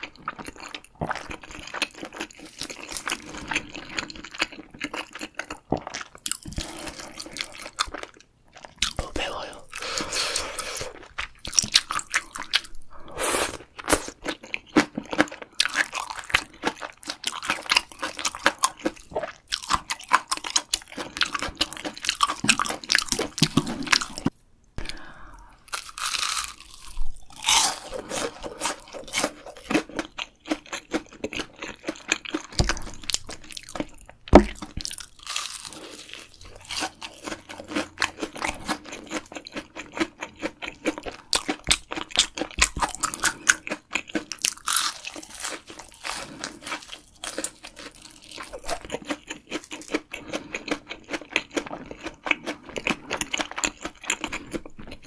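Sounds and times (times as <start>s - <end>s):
crunchy bites and chewing: 13.5s - 25.0s, 25.6s - 55.0s.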